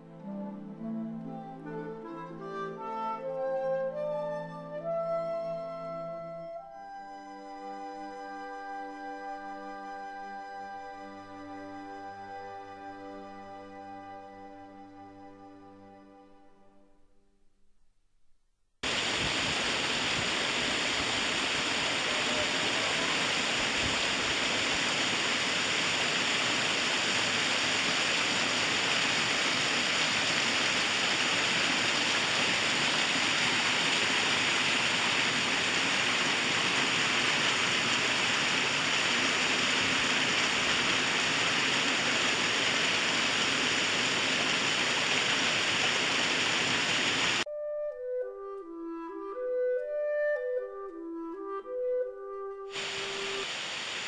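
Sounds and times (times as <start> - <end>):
waterfall rushing: 18.8 - 47.4, 52.7 - 54.0.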